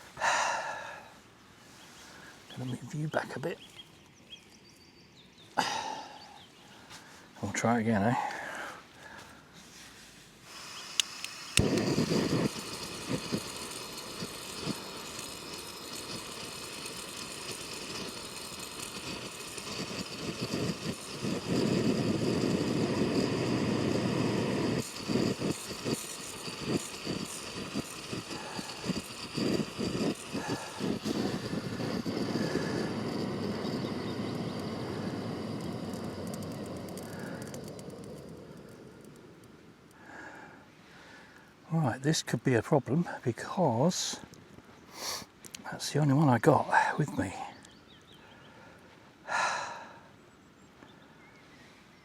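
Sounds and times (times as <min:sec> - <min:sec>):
camping stove burner roaring: 0:10.4 - 0:40.7.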